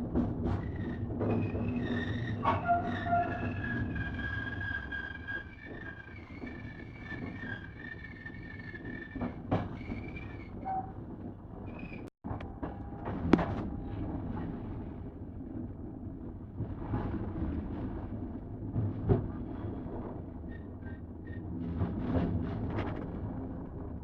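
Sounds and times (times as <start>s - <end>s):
train rolling: 0.0s - 24.0s
wheel squeal: 0.5s - 11.0s.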